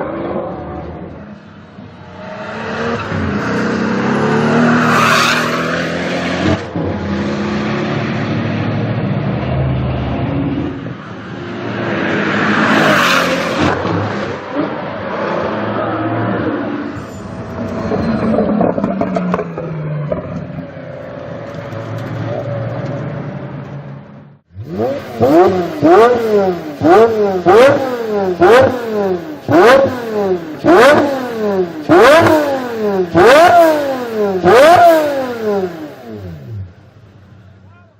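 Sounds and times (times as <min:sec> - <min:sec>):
engine revving: 0:02.0 - 0:23.0, 0:24.5 - 0:36.8
exhaust cracks: 0:17.0 - 0:23.0.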